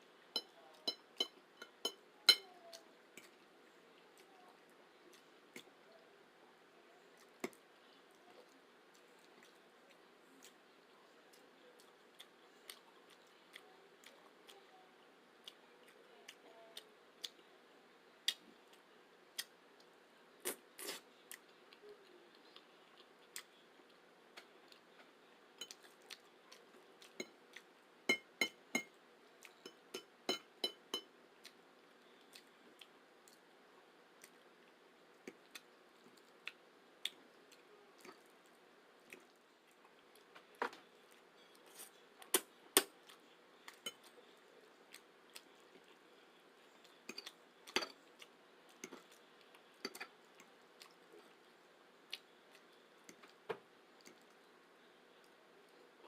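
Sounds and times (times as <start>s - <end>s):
person eating spaghetti: 20.4s - 54.6s.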